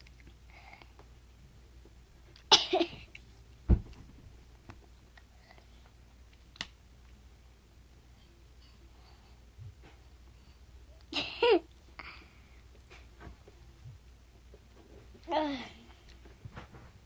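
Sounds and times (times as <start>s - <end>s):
short low thump: 3.7s - 4.2s.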